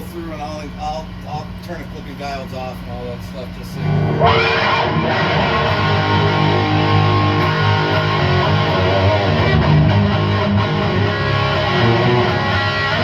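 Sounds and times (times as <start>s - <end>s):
distorted electric guitar chords: 3.8s - 13.0s.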